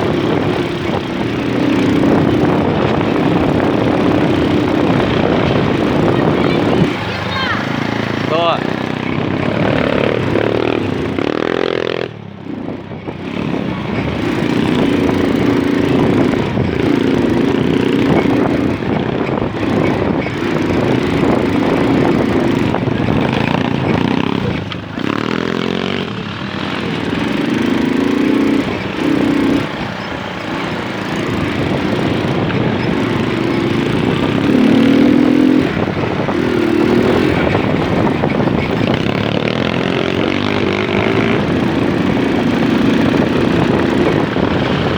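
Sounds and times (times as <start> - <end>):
moped engine running: 0.0 - 44.9.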